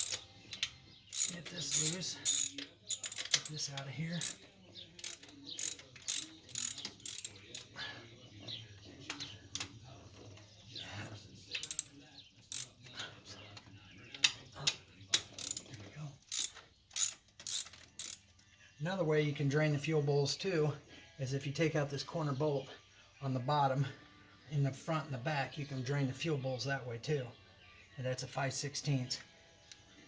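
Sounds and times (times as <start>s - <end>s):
ratchet wrench clicking: 0.0s - 4.4s, 5.0s - 7.7s, 11.5s - 11.9s, 12.5s - 12.7s, 15.1s - 15.7s, 16.3s - 18.3s.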